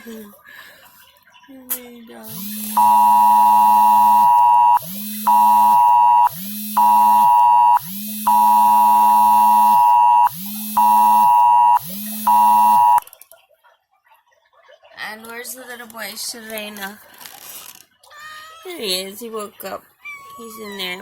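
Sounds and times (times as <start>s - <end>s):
loud electronic beeping: 2.3s - 13.0s.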